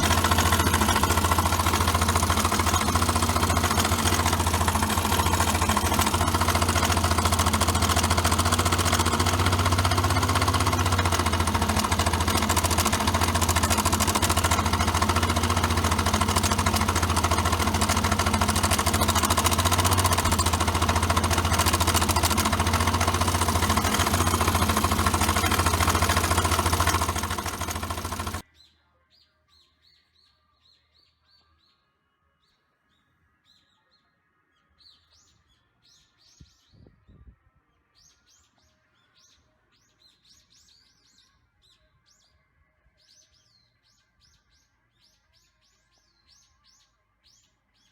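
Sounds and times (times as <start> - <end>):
scooter engine clattering: 0.0 - 28.4.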